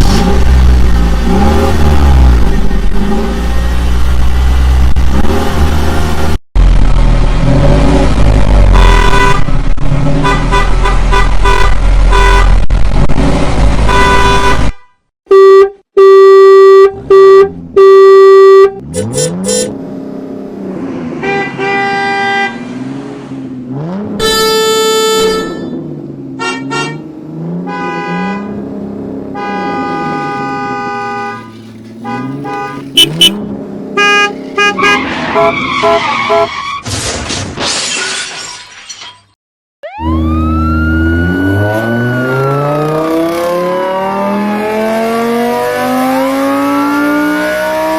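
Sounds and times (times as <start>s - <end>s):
car engine rumbling: 0.0s - 14.7s, 16.9s - 36.6s
car horn honks: 8.7s - 9.6s, 10.2s - 12.6s, 13.8s - 19.8s, 21.2s - 22.6s, 24.2s - 25.8s, 26.4s - 27.1s, 27.7s - 28.6s, 29.3s - 33.4s, 34.0s - 36.6s
wavering rising and falling tones: 39.8s - 45.0s.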